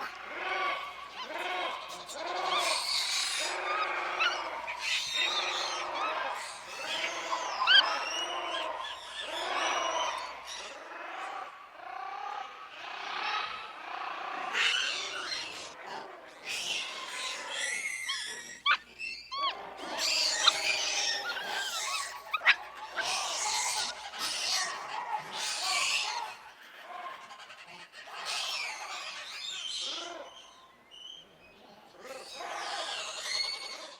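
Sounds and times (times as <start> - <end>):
monkeys squealing: 0.0 - 10.9, 14.5 - 15.8, 16.4 - 26.5, 27.1 - 30.6, 32.1 - 33.9.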